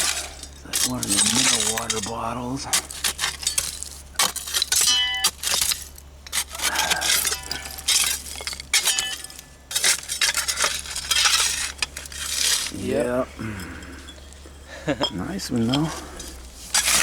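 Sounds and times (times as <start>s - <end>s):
glass bottles clinking together: 0.0s - 12.7s, 13.6s - 17.0s
ringing glass clinks: 7.1s - 9.4s, 13.8s - 15.9s.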